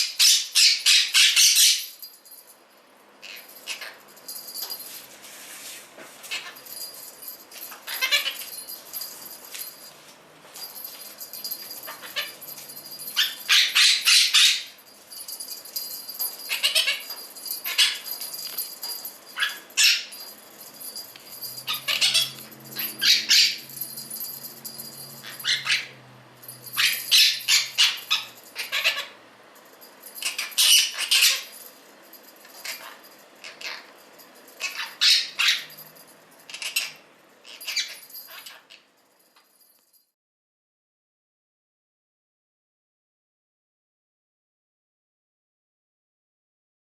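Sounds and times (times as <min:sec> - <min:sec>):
parrot calls: 0:00.0 - 0:02.0, 0:03.2 - 0:04.0, 0:06.3 - 0:06.7, 0:07.7 - 0:08.6, 0:11.8 - 0:12.5, 0:13.1 - 0:14.8, 0:16.5 - 0:18.2, 0:19.4 - 0:20.1, 0:21.6 - 0:23.7, 0:25.1 - 0:26.0, 0:26.8 - 0:29.2, 0:30.2 - 0:31.5, 0:32.6 - 0:34.0, 0:34.6 - 0:35.7, 0:36.5 - 0:38.9
small metal bell jangling: 0:00.0 - 0:40.2.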